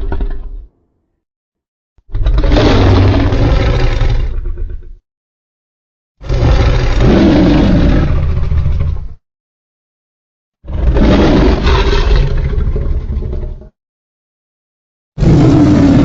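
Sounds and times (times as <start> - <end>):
deep monster roar: 2.1 - 5.0, 6.2 - 9.2, 10.6 - 13.8, 15.2 - 16.0.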